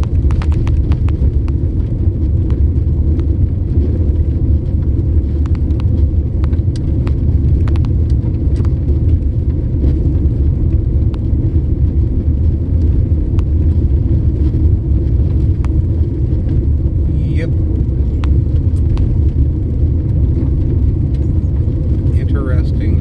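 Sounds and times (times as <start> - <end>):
car road rumble: 0.0 - 23.0
light clicks and ticks: 5.3 - 9.2, 17.8 - 19.4.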